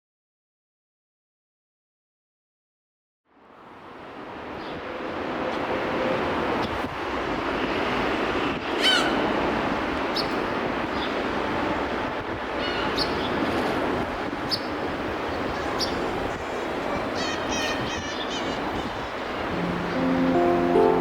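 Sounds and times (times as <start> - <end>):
distant city traffic: 3.3 - 21.0
birds chirping: 14.5 - 21.0.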